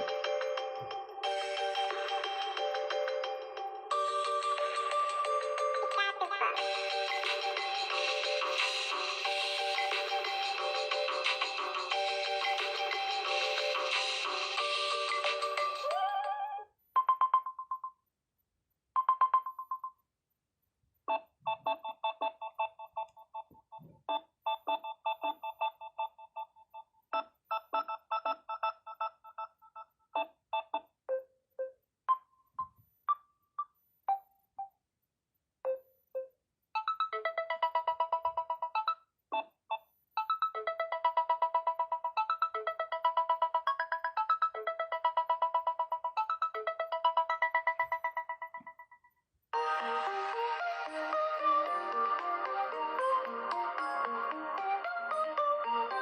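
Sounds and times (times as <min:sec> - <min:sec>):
plucked electronic ringtone melody: 0:00.0 - 0:17.9, 0:35.7 - 0:39.5, 0:40.2 - 0:50.0
trilled phone beeps: 0:17.0 - 0:18.0, 0:19.0 - 0:20.0, 0:40.2 - 0:49.2.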